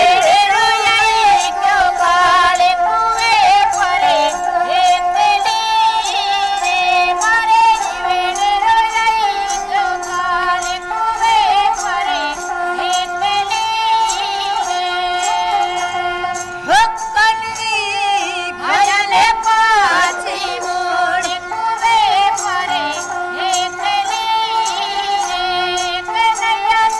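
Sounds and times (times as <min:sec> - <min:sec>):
steady held drone: 0:00.0 - 0:16.7
wavering ornamented melody: 0:00.0 - 0:26.9.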